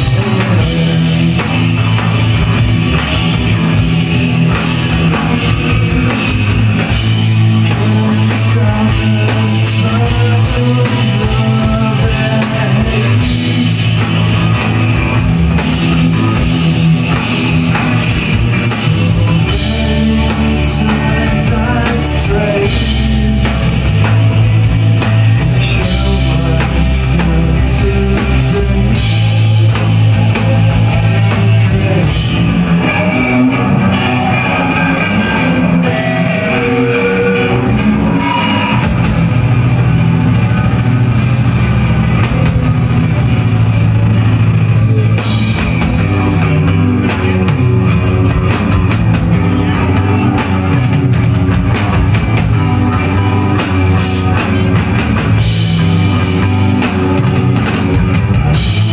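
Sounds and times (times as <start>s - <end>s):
person singing: 0.0s - 1.6s, 5.1s - 14.7s, 18.5s - 23.9s, 25.3s - 38.9s
drum kit beat: 0.0s - 58.9s
electric guitar: 0.0s - 58.9s.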